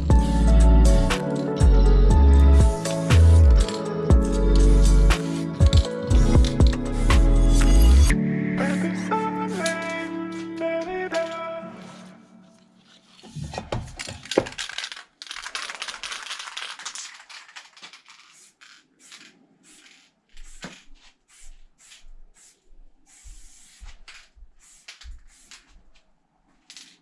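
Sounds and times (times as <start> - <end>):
aerosol spray hissing: 18.2 - 25.8.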